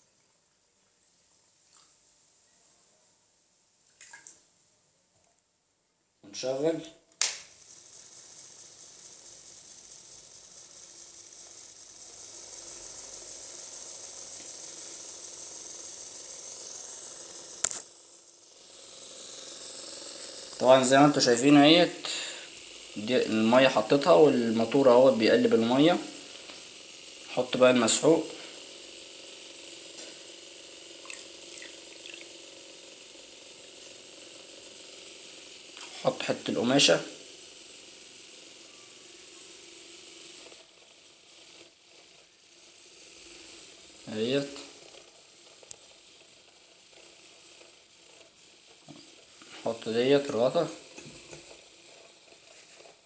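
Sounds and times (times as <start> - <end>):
switch click: 7.2 - 7.5
small motor whining: 7.2 - 53.0.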